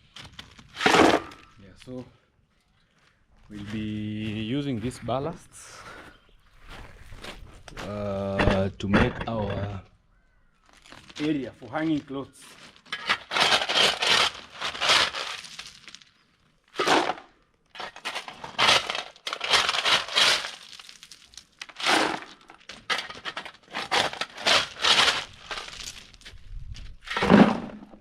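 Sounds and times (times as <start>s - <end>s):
stone ballast crunching and rattling: 0.0s - 1.6s, 7.4s - 28.0s.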